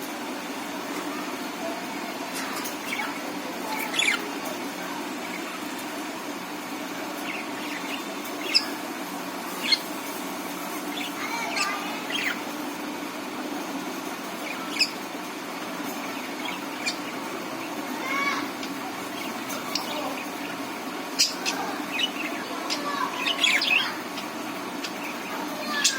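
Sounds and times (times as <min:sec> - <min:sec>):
low background hum: 0:00.0 - 0:25.9
budgerigars chirping: 0:02.5 - 0:06.0, 0:07.0 - 0:08.9, 0:09.5 - 0:10.2, 0:10.8 - 0:12.6, 0:14.2 - 0:15.3, 0:15.9 - 0:25.9.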